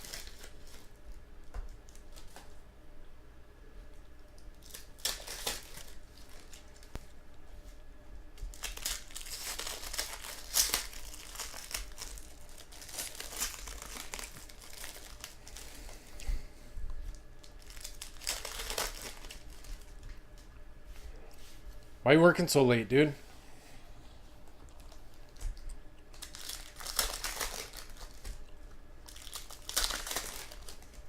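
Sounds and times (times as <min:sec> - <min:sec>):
card pack wrappers tearing and crinkling: 0:00.0 - 0:02.6, 0:04.3 - 0:07.1, 0:08.4 - 0:16.0, 0:17.2 - 0:20.4, 0:24.7 - 0:31.0.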